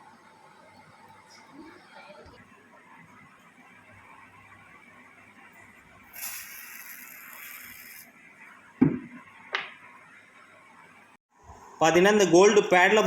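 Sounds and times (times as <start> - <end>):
aerosol spray hissing: 6.1 - 8.1.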